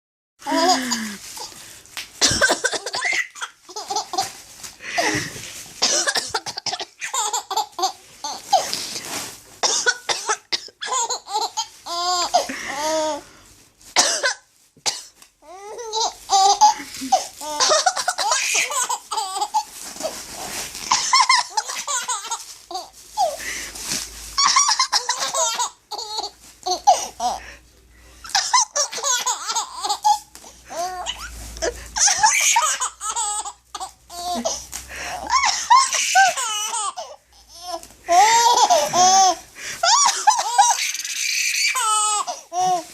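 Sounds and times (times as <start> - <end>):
adult fake coughs: 2.2 - 3.0, 5.0 - 6.9, 14.0 - 15.1
baby laughing: 2.2 - 4.4, 6.0 - 8.8, 10.0 - 13.2, 15.5 - 19.7, 20.9 - 23.4, 24.4 - 27.4, 28.2 - 34.6, 35.2 - 42.9.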